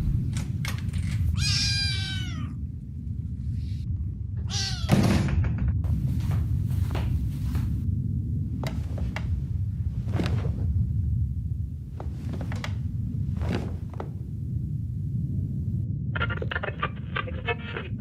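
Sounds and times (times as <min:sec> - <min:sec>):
steady low rumble: 0:00.0 - 0:18.0
short knocks and thunks: 0:12.0 - 0:14.2.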